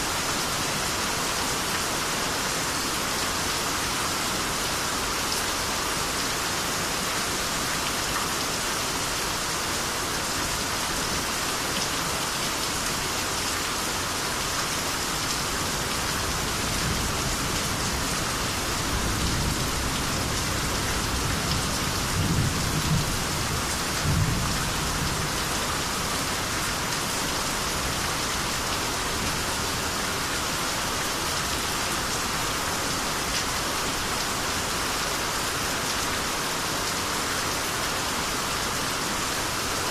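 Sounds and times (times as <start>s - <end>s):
heavy rain downpour: 0.0s - 39.9s.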